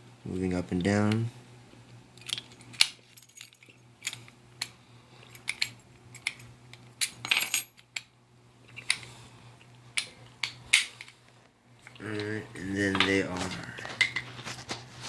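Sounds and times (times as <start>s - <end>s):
keys rattling: 2.2s - 4.3s, 5.2s - 8.0s.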